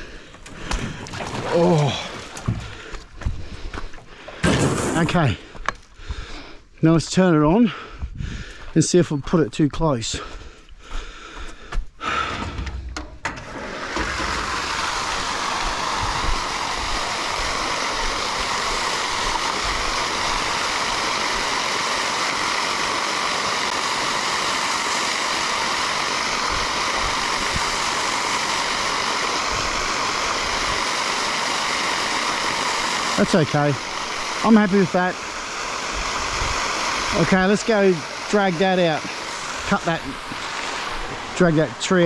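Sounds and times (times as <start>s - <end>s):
fountain water splashing: 1.1s - 2.6s, 14.1s - 42.0s.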